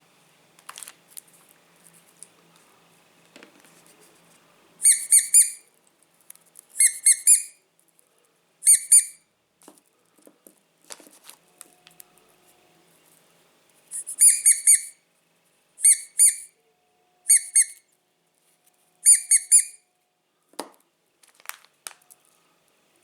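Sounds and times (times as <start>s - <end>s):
handling noises and clicks: 0.5s - 4.4s, 5.8s - 6.8s, 9.6s - 12.4s, 20.6s - 22.4s
high-pitched squeaky chirps: 4.8s - 5.7s, 6.8s - 7.6s, 8.6s - 9.2s, 13.9s - 15.0s, 15.8s - 16.6s, 17.3s - 17.9s, 19.0s - 19.9s.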